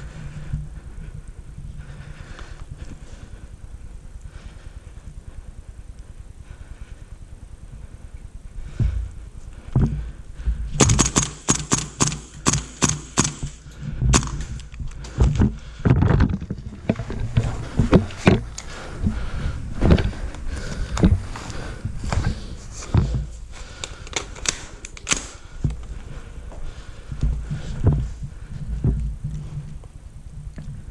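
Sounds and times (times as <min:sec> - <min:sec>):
low thumps of movement: 0:00.0 - 0:11.2, 0:13.4 - 0:23.8, 0:25.4 - 0:30.9
airsoft guns firing: 0:10.8 - 0:14.6, 0:24.1 - 0:25.4.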